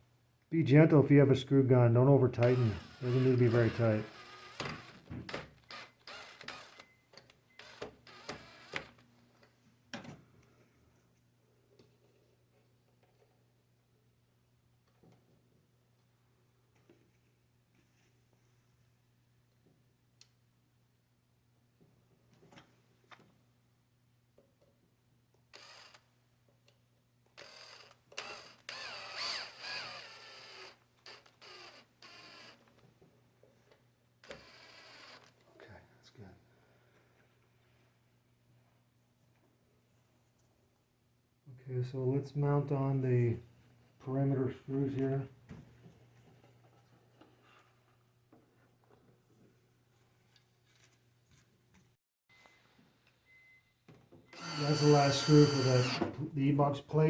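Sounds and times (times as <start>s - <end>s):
cordless screw gun driving screw: 2.4s - 6.9s, 7.6s - 9.0s, 25.5s - 26.0s, 27.4s - 32.7s, 34.2s - 35.4s, 54.4s - 56.2s.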